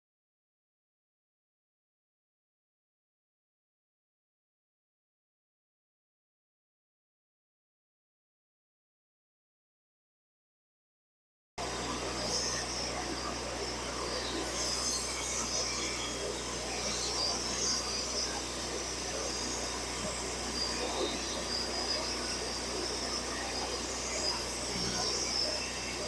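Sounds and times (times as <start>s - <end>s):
band saw cutting log: 11.6s - 26.0s.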